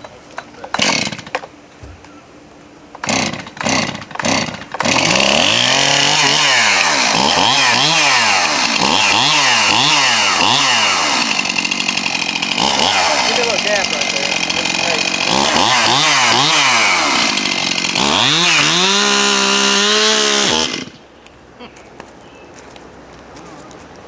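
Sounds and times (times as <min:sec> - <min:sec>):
chainsaw revving: 0:00.7 - 0:01.4, 0:03.0 - 0:21.0
chainsaw starter cord pulls: 0:00.7 - 0:01.4, 0:03.0 - 0:21.0.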